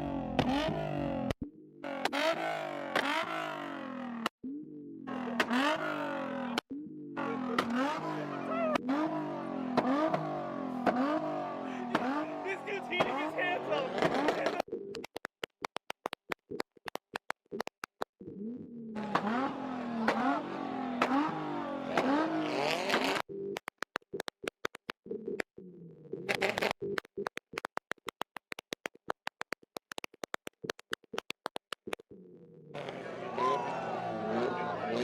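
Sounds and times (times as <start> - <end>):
car engine on rev limiter: 0.0 - 14.6, 18.2 - 23.5, 32.7 - 35.0
exhaust pops and bangs: 7.4 - 8.1, 9.7 - 11.2, 11.8 - 14.7.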